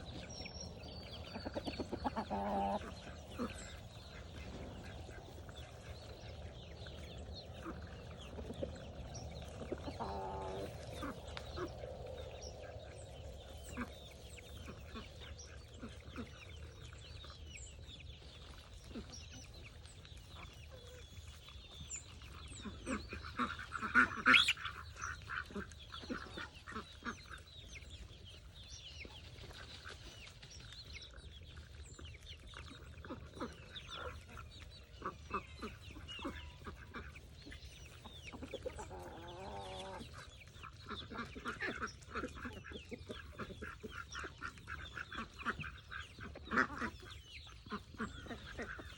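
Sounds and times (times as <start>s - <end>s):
poultry calling: 1.1s - 6.4s, 9.4s - 12.3s, 22.6s - 24.8s.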